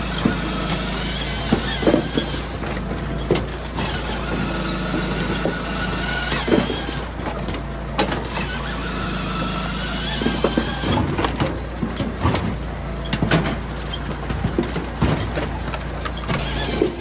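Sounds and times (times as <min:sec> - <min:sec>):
firewood processor engine drone: 0:00.0 - 0:17.0
wood knocks and clunks: 0:10.2 - 0:17.0.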